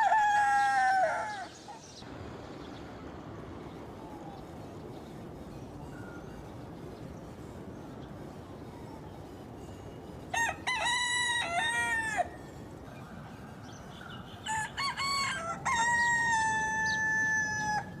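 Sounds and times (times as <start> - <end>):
rooster crowing: 0.0 - 1.7, 10.3 - 12.6, 14.4 - 18.0.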